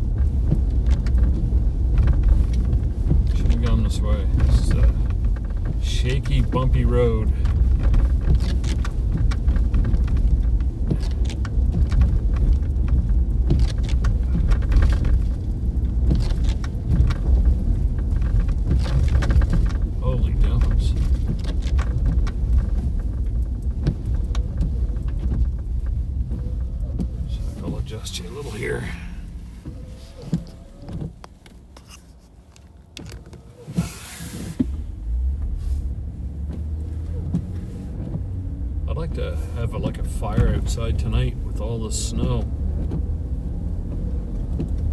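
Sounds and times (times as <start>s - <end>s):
knocks and rattles from bumps: 0.0s - 28.7s
road and engine rumble: 0.0s - 44.9s.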